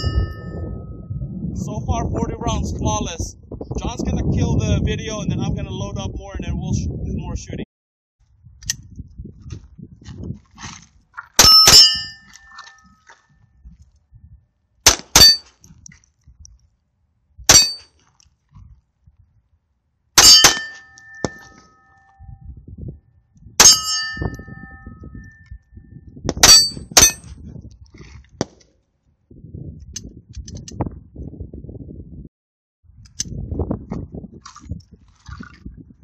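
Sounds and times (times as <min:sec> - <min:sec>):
steel targets ringing: 0:00.0 - 0:00.6, 0:11.4 - 0:12.9, 0:17.5 - 0:17.9, 0:20.2 - 0:22.2, 0:23.6 - 0:25.3, 0:26.4 - 0:27.2
pistol shots: 0:14.9 - 0:15.5, 0:20.2 - 0:21.7.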